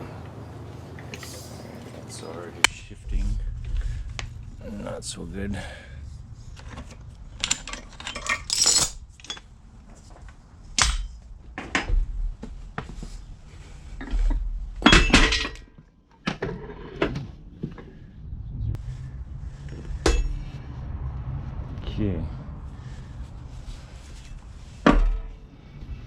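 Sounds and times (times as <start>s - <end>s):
metal clinks and clanks: 6.6s - 9.5s.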